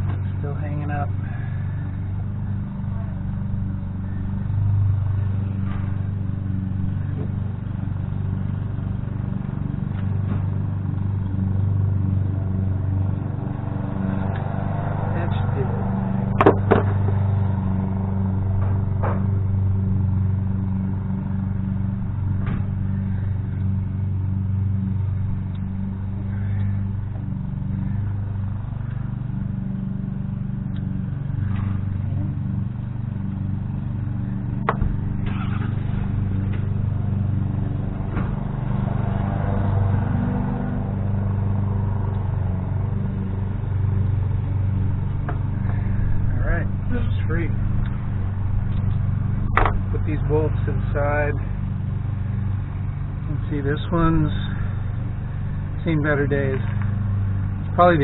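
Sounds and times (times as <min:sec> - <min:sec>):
low mechanical hum: 0:00.0 - 0:58.0
sharp metallic clicks and knocks: 0:48.7 - 0:50.0.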